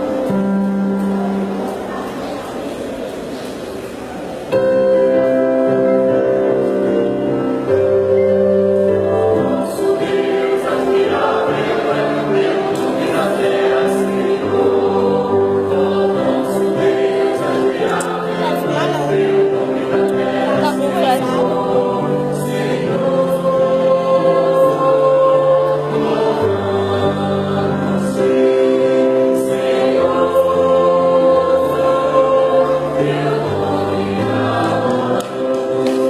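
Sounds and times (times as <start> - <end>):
choir singing in harmony: 4.6 - 36.0.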